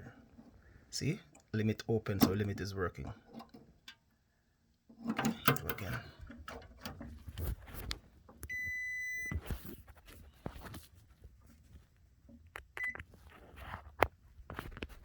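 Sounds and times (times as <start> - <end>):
multimeter beep: 8.5 - 9.4, 12.8 - 13.0.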